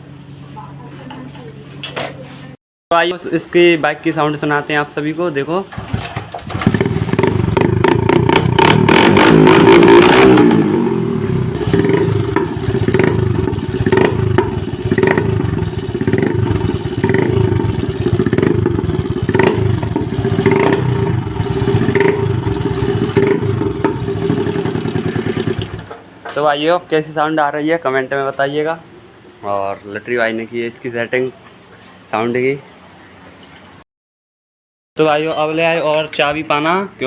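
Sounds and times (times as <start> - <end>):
exhaust crackles: 5.8 - 25.9
motorcycle engine revving: 5.8 - 26.0.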